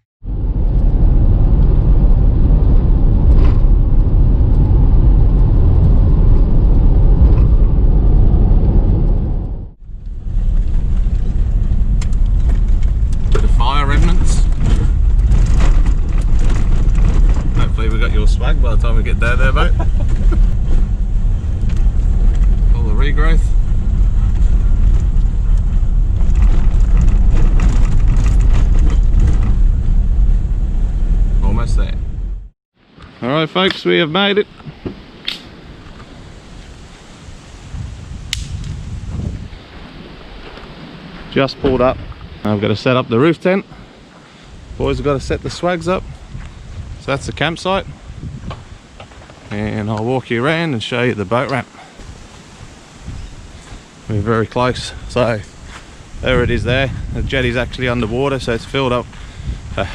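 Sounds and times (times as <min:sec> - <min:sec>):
car road and engine rumble: 0:00.2 - 0:33.0, 0:43.5 - 0:59.9
rattles and knocks: 0:10.4 - 0:19.0, 0:23.6 - 0:30.4.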